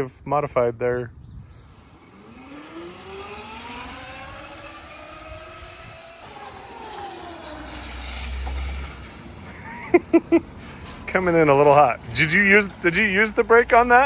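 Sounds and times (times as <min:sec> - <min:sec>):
electric motorcycle motor whining: 0:01.5 - 0:09.7, 0:11.4 - 0:14.0.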